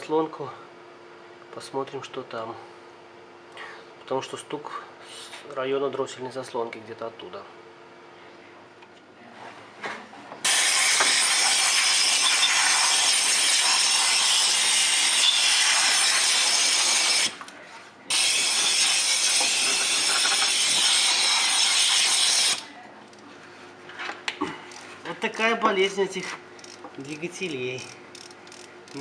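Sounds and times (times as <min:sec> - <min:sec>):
power ratchet wrench running: 0:10.5 - 0:17.4, 0:18.1 - 0:22.6, 0:26.6 - 0:26.8, 0:27.4 - 0:29.0.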